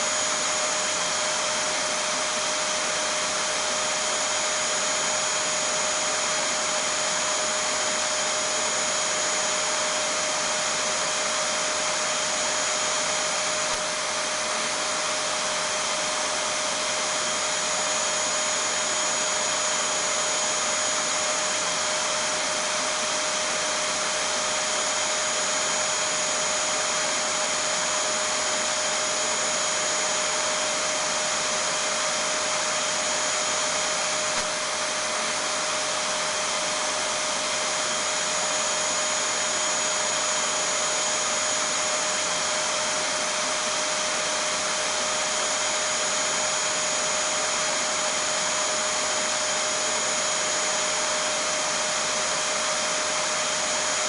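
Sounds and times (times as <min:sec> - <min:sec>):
vacuum cleaner running: 0:00.0 - 0:54.0.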